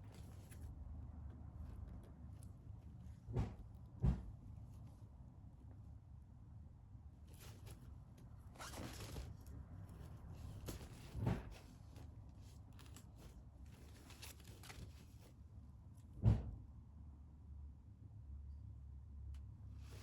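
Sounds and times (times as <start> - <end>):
crinkly cat tunnel rustling: 7.2 - 15.6.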